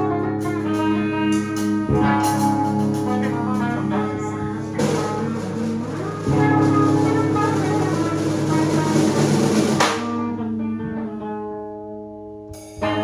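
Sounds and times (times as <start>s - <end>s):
clean electric guitar chords: 0.0s - 13.0s.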